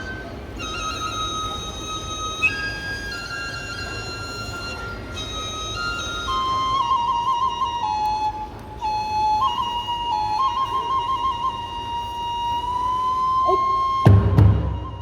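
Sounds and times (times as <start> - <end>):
bamboo flute melody: 0.0 - 15.0
drum strike: 14.0 - 15.0.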